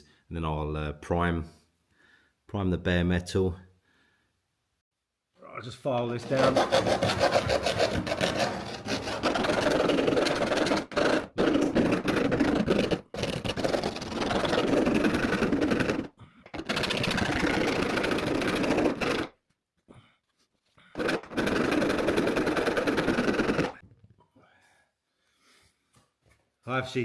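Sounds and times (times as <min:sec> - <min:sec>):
file rasping on sheet metal: 0:06.2 - 0:19.3, 0:21.0 - 0:23.8.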